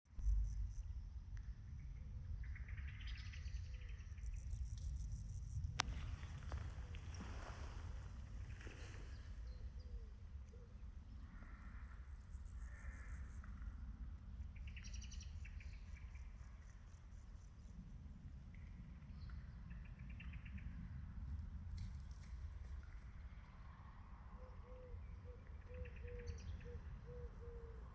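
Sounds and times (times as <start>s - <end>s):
high insect chirping: 0.1s - 1.1s, 3.8s - 6.8s, 14.6s - 17.9s
steady low rumble: 0.1s - 17.1s, 17.7s - 24.0s.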